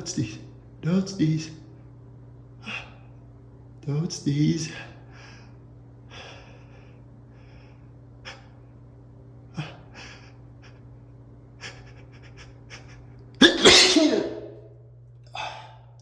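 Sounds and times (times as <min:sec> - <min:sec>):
man sneezing: 0:12.8 - 0:14.6.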